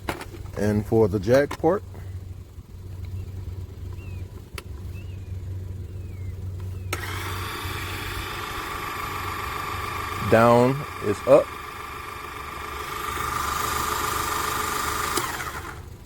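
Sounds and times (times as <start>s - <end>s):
low steady hum: 0.0s - 16.0s
car jack motor whining: 6.5s - 16.0s.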